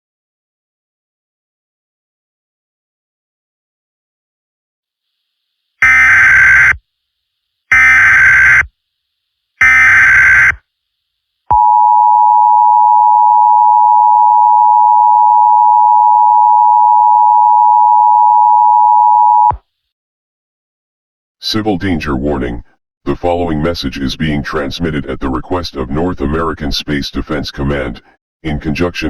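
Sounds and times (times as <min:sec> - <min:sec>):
harsh digital data bursts: 0:05.8 - 0:06.8, 0:07.7 - 0:08.7, 0:09.6 - 0:10.6
steady two-tone alert signal: 0:05.8 - 0:06.8, 0:07.7 - 0:08.7, 0:09.6 - 0:10.6, 0:11.5 - 0:19.6.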